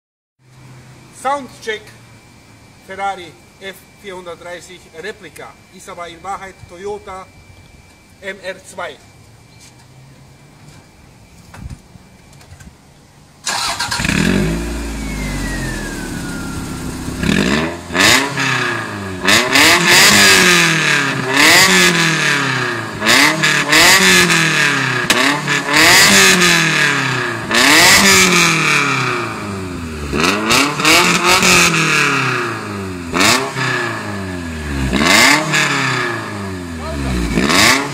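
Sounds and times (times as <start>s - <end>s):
car engine idling and revving: 13.4s - 37.9s
car engine starting: 13.4s - 37.9s.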